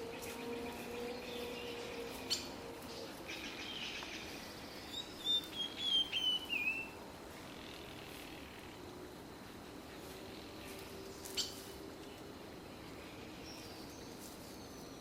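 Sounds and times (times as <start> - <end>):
bird chirping: 0.0 - 8.8.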